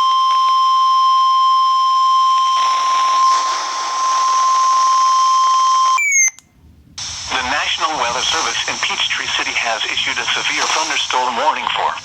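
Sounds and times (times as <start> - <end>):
high emergency alert tone: 4.0 - 6.4
radio hiss: 7.0 - 12.0.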